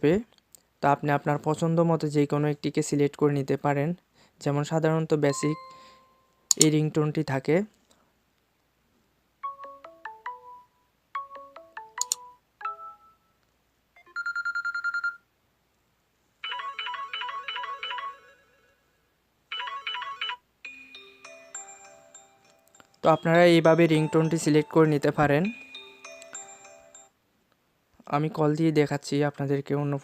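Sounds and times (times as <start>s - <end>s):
phone ringtone melodies: 5.3s - 6.3s, 9.4s - 13.4s, 14.0s - 15.2s, 16.4s - 27.2s
repeating chime pattern: 5.3s - 6.3s, 19.6s - 27.2s.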